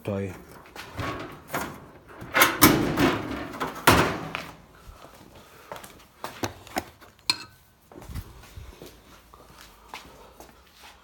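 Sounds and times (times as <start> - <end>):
scraping rattling sheet metal: 0.6 - 4.4.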